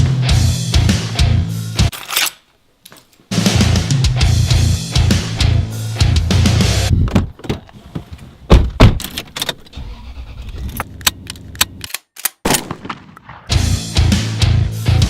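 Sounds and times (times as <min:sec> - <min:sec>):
heavy metal music: 0:00.0 - 0:01.9, 0:03.3 - 0:06.9, 0:13.5 - 0:15.0.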